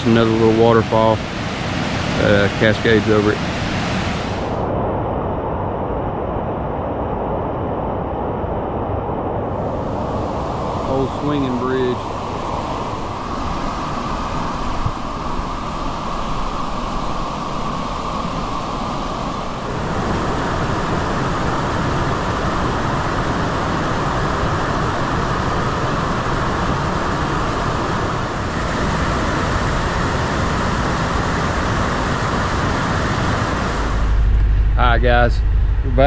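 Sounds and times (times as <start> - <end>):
waterfall roaring: 0.0 - 4.4, 9.9 - 34.1.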